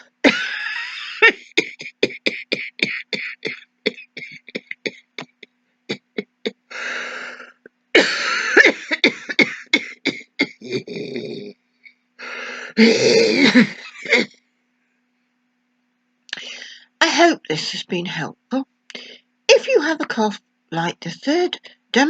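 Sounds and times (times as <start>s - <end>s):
woman coughing: 0.2s - 6.6s, 7.4s - 11.0s, 12.8s - 14.4s
noisy in-breath: 6.7s - 8.4s, 12.2s - 12.9s, 16.4s - 17.0s.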